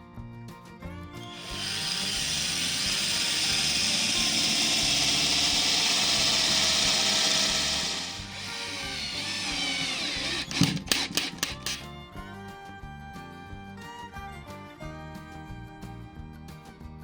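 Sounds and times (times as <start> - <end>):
power tool whirring on wood: 1.2 - 11.9.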